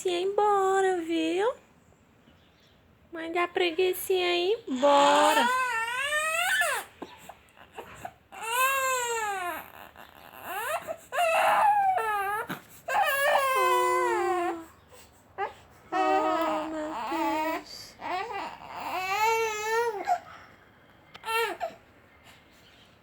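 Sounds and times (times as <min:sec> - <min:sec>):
baby crying in fussy wails: 0:04.8 - 0:14.8, 0:15.4 - 0:20.3, 0:21.2 - 0:21.8.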